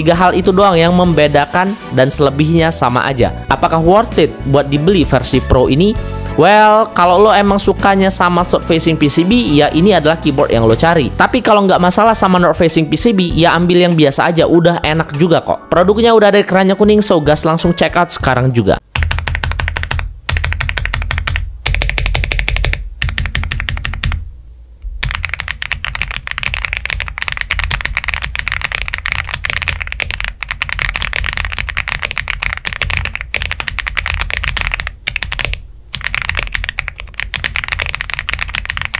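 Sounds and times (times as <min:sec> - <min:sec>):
background music: 0:00.0 - 0:18.9.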